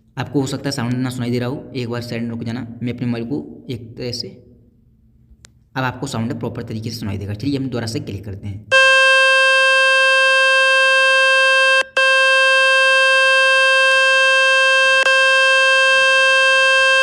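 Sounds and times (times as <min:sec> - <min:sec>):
click: 0:05.4 - 0:05.6
loud buzzy tone from loudspeaker: 0:08.7 - 0:17.0.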